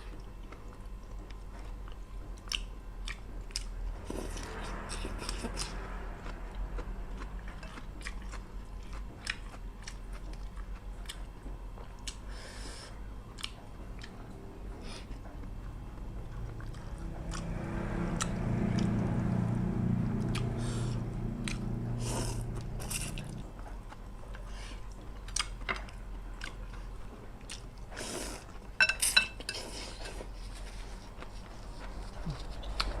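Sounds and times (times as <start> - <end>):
chewing and biting: 0.0 - 12.3, 13.3 - 14.3, 21.3 - 27.9, 31.0 - 33.0
low steady hum: 0.0 - 33.0.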